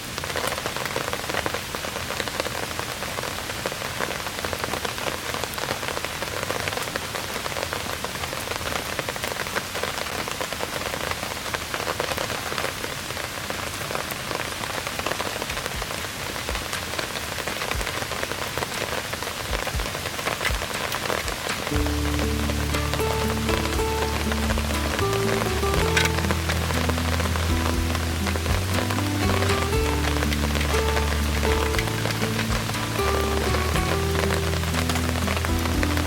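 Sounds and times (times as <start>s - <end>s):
rain hitting a tarp: 0.0s - 36.0s.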